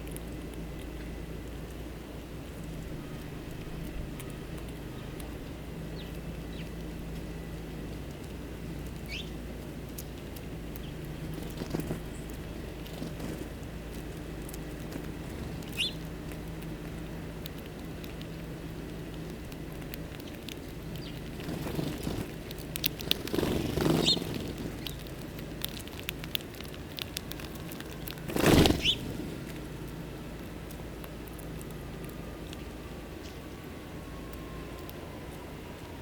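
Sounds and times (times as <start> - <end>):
small birds chirping: 0.0 - 35.0
birds pecking and shuffling: 0.0 - 36.0
rustling bursts: 27.8 - 29.7.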